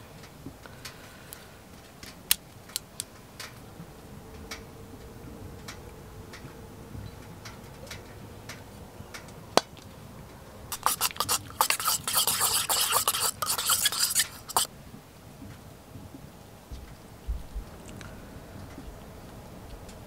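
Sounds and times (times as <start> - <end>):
metal utensil scraping a pan: 10.7 - 14.7.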